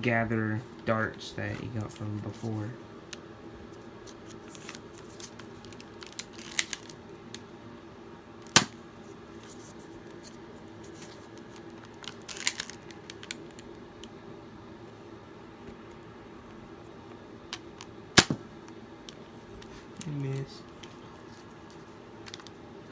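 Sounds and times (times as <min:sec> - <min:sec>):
low steady hum: 0:00.0 - 0:22.9
toy dart firing snap: 0:08.5 - 0:08.8, 0:18.2 - 0:18.5.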